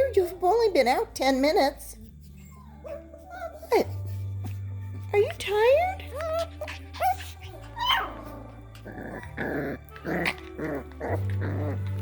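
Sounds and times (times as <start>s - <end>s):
puppies growling: 2.2s - 12.0s
puppies yipping: 6.0s - 12.0s.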